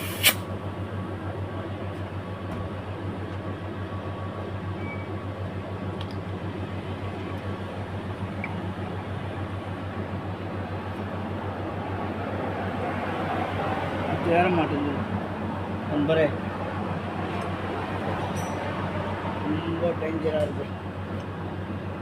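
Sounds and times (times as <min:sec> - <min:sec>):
air compressor humming: 0:00.0 - 0:00.7.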